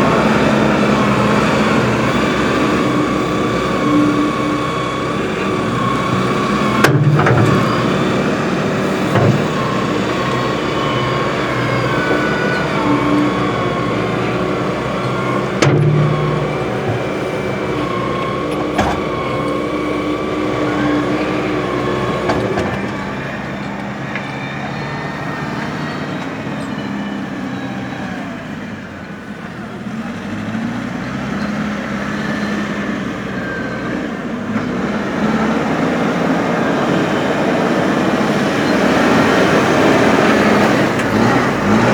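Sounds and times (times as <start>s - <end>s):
diesel engine running: 0.0s - 41.9s.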